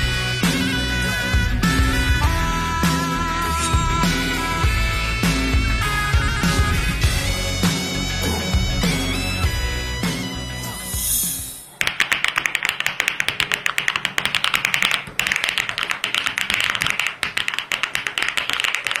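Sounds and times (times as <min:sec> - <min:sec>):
music: 0:00.0 - 0:11.8
mechanical keyboard fast typing: 0:11.8 - 0:19.0.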